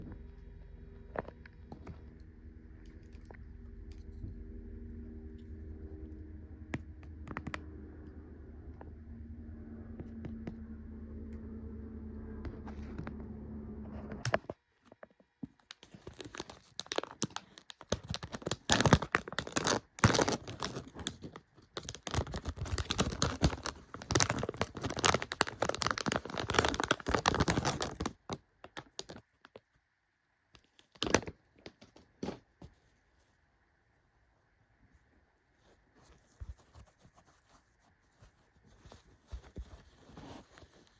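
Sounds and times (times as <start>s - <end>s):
low steady hum: 0.0s - 15.0s
plastic packaging crinkling: 15.7s - 29.2s.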